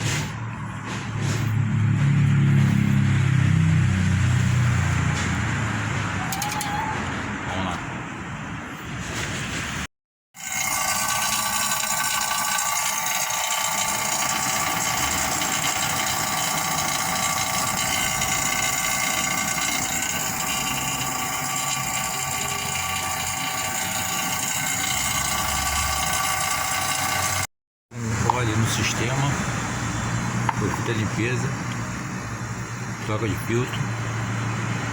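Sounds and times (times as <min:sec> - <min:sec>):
electric pump motor humming: 0:10.4 - 0:34.9.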